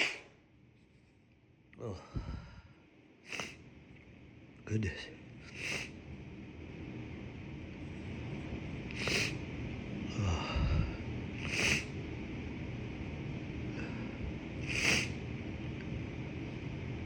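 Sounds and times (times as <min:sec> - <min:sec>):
person sniffing sharply: 0:00.0 - 0:00.3, 0:03.3 - 0:03.6, 0:05.5 - 0:05.9, 0:08.9 - 0:09.4, 0:11.4 - 0:11.9, 0:14.6 - 0:15.2
snuffling breath: 0:08.9 - 0:09.4, 0:10.2 - 0:11.9, 0:13.8 - 0:15.2.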